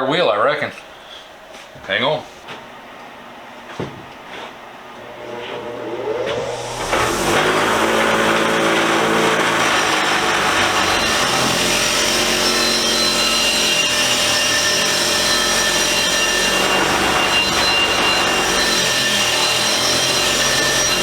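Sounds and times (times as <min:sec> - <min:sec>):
motor humming: 0:05.0 - 0:21.0.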